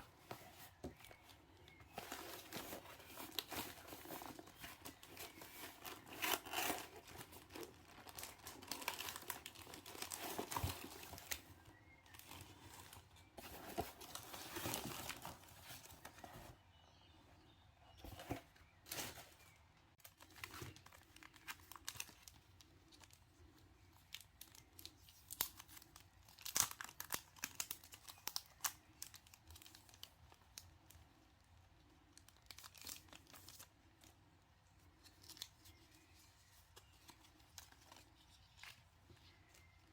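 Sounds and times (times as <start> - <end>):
packaging crinkling and tearing: 1.8 - 16.2, 18.8 - 23.2, 23.8 - 30.7, 32.1 - 33.7.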